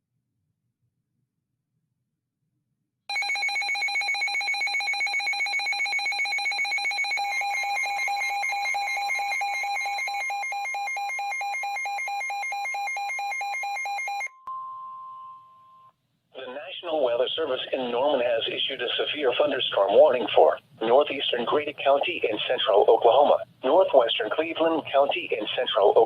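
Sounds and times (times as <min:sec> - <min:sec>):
rapidly pulsing electronic alarm: 0:03.1 - 0:14.3.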